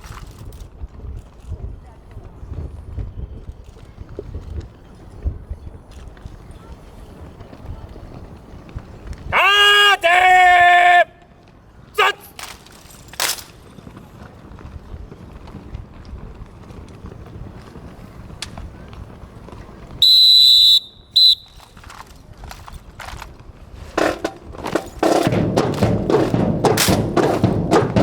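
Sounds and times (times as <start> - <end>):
whistle blasts: 20.0 - 21.9
percussion strokes: 23.8 - 28.0.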